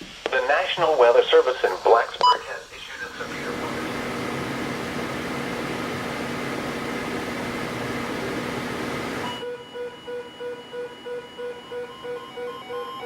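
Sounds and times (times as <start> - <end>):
radio static hiss: 0.0 - 9.3.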